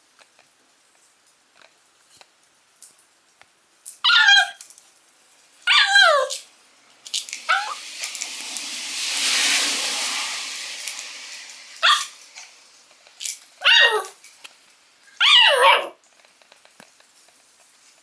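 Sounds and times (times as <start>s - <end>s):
puppy yipping barks: 4.0s - 4.6s, 5.7s - 6.4s, 7.5s - 7.8s, 11.8s - 12.2s, 13.6s - 14.2s, 15.2s - 16.0s.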